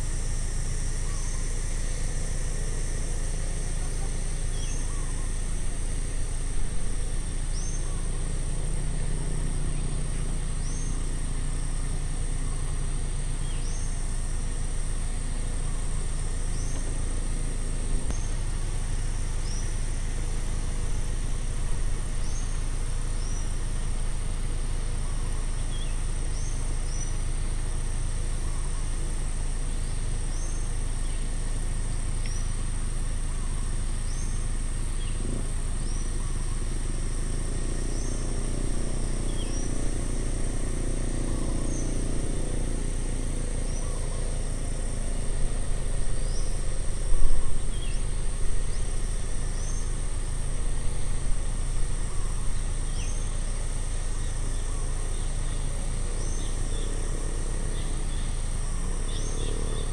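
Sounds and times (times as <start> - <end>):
constant low rumble: 0.0 - 59.9
insects trilling: 0.0 - 59.9
low hum of passing vehicle: 0.0 - 59.9.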